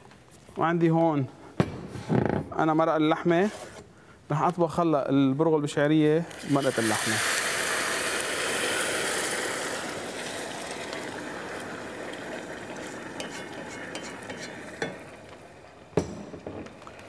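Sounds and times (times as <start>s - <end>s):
pot sizzling: 6.3s - 16.0s
utensil knocks: 16.0s - 16.9s.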